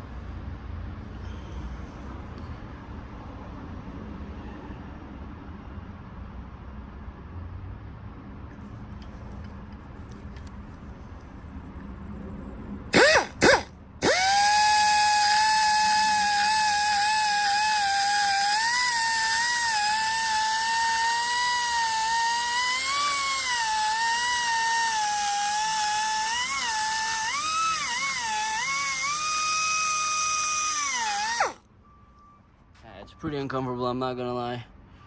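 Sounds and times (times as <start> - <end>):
air die grinder whine: 12.9 - 31.6.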